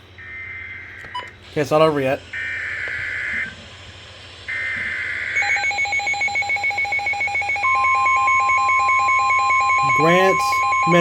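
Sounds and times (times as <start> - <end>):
steady single-pitch alarm tone: 0.2 - 1.3, 2.3 - 3.7, 4.4 - 11.0
pulsing electronic alarm beep: 4.5 - 11.0.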